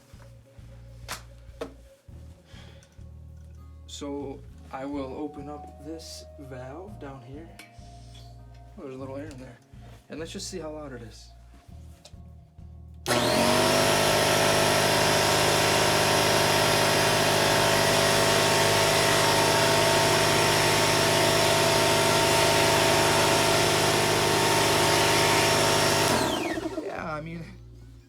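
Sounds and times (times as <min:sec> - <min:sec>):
valve whistling: 0:13.1 - 0:27.1
air compressor running: 0:13.1 - 0:27.2.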